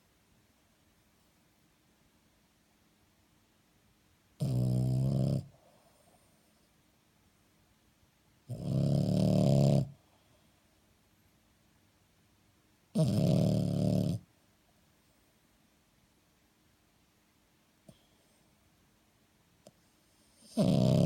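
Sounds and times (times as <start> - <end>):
dog snoring: 4.4 - 6.2, 8.5 - 10.0, 12.9 - 14.3, 20.1 - 21.0.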